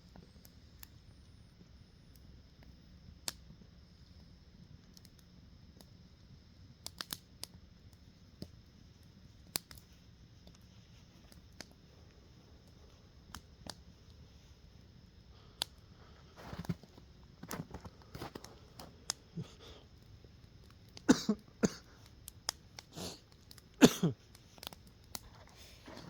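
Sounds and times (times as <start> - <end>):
man coughing: 21.1 - 21.9, 23.8 - 24.2.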